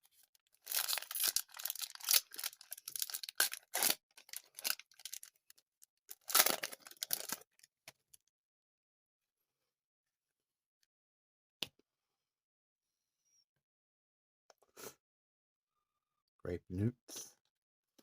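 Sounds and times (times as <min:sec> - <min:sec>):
wrapper tearing and crinkling: 0:00.6 - 0:05.3, 0:06.1 - 0:07.6.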